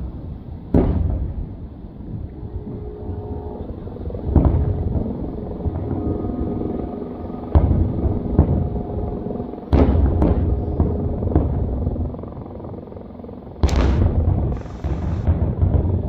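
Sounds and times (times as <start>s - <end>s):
fireworks booming and cracking: 0.7s - 2.2s, 4.2s - 5.0s, 9.7s - 12.0s, 13.6s - 16.0s.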